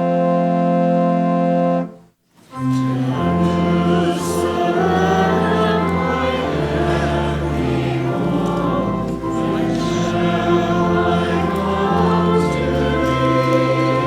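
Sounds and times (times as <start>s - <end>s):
organ chords: 0.0s - 14.0s
voices singing a hymn: 2.5s - 14.0s.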